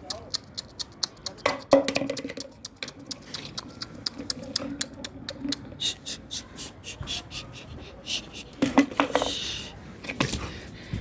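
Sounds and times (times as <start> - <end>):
dog making clicking sounds: 0.0 - 5.9.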